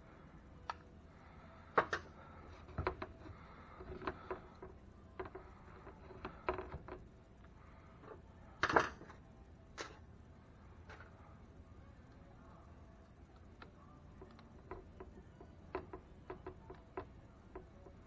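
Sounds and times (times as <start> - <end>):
small parts and tools clicking: 1.6 - 10.0, 13.0 - 18.0.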